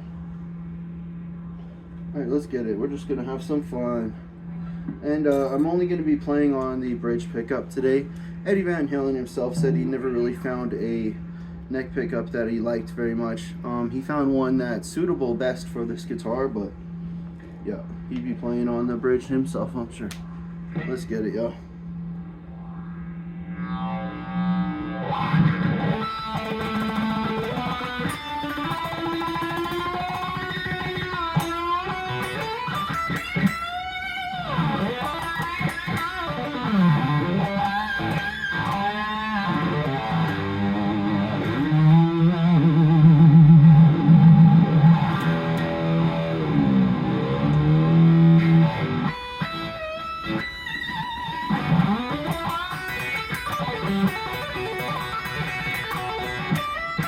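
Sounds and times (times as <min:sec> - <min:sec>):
electric guitar lead with vibrato: 0:09.5 - 0:10.3, 0:22.6 - 0:57.0.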